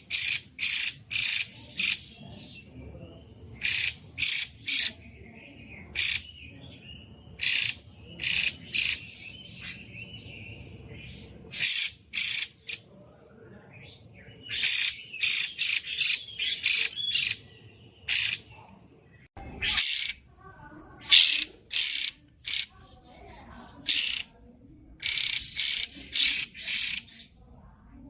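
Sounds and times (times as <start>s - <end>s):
bird calling loudly: 19.6s - 20.2s, 21.0s - 22.8s, 23.8s - 24.3s, 25.0s - 27.3s.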